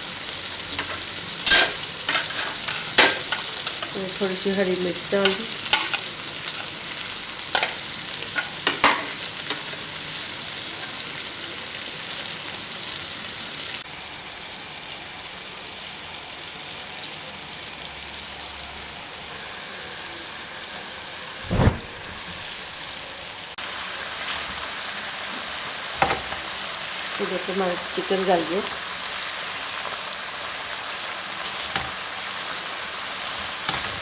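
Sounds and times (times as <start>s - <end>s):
food sizzling in a pan: 0.0s - 34.0s
loud thump: 21.4s - 22.6s.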